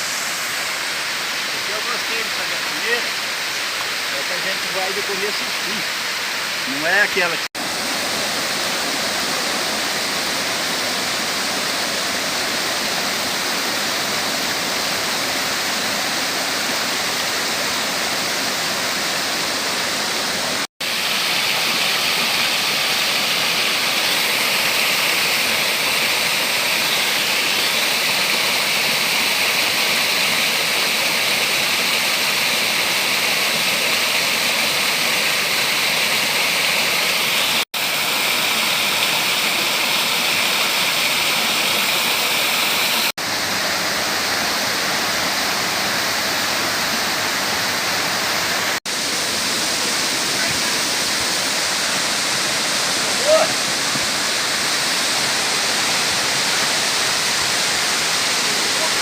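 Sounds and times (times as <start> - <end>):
waterfall rushing: 0.0 - 59.0.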